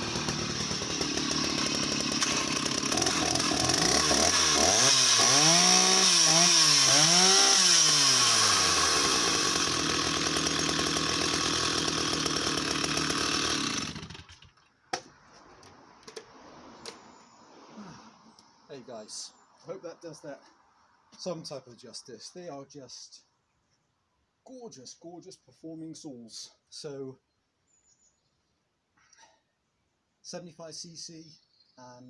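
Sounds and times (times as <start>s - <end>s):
chainsaw cutting wood: 0.0s - 16.9s.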